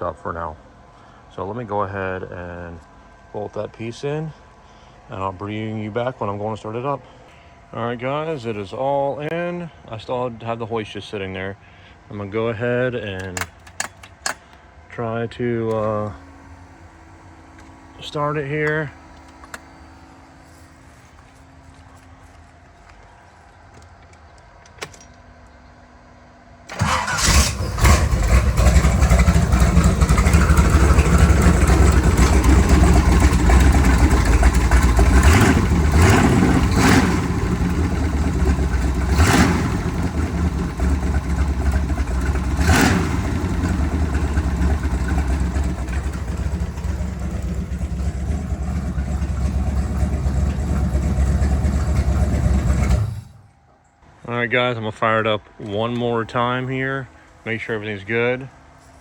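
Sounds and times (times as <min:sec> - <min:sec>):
boat engine running: 0:26.7 - 0:53.4.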